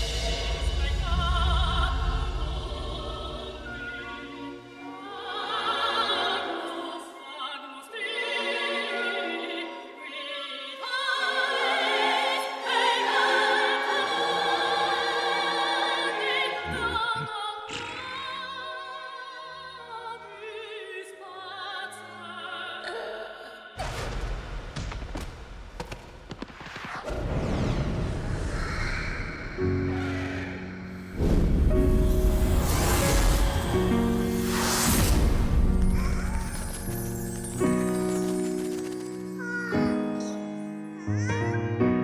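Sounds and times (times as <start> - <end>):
music: 0.0 - 23.8, 29.5 - 42.0
opera-style singing: 0.0 - 23.8.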